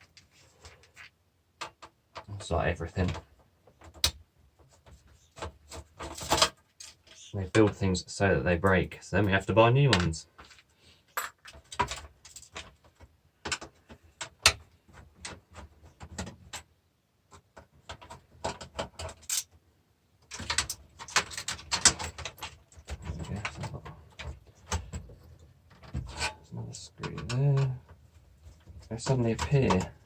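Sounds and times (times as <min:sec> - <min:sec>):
screwdriver and screws clinking on metal: 0:04.8 - 0:07.3, 0:10.0 - 0:14.6, 0:17.9 - 0:19.5, 0:20.3 - 0:28.0, 0:28.6 - 0:30.0.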